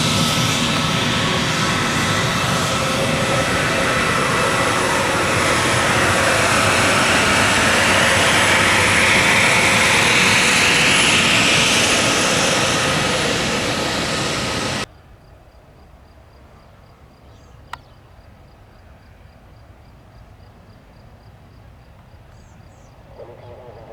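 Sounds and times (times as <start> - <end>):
jet engines at high power: 0.0 - 14.9.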